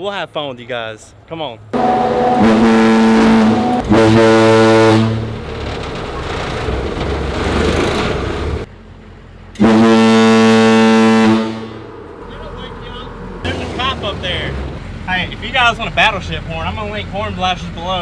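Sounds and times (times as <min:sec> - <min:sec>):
vehicle engine running: 0:01.7 - 0:18.0
air horn blasts: 0:01.8 - 0:05.4, 0:09.6 - 0:11.9.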